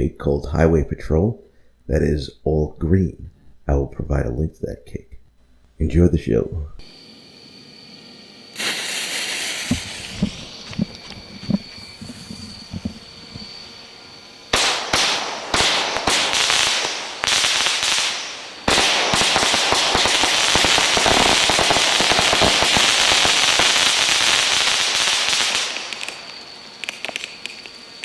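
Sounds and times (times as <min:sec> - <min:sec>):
fireworks shots firing: 0:08.6 - 0:13.5, 0:14.5 - 0:27.7.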